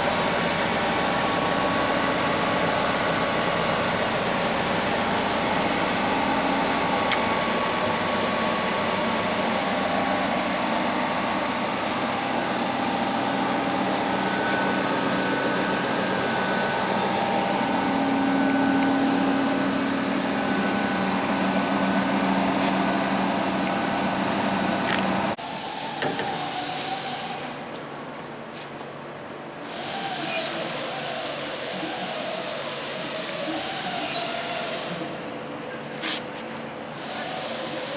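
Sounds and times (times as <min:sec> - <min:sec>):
grinding machine humming: 0:00.0 - 0:25.4.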